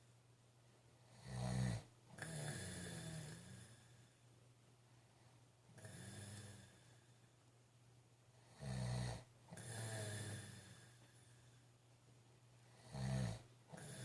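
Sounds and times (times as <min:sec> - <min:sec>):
man snoring: 0:01.1 - 0:04.0, 0:05.8 - 0:07.0, 0:08.5 - 0:11.2, 0:12.8 - 0:14.0.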